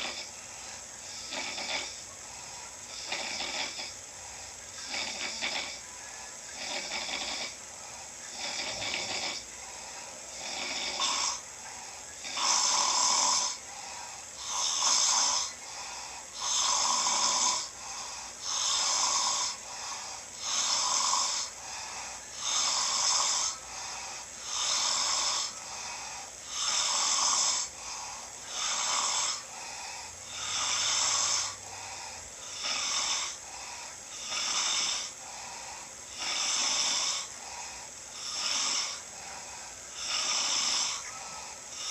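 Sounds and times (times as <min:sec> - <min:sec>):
person snoring loudly: 0:00.0 - 0:41.9.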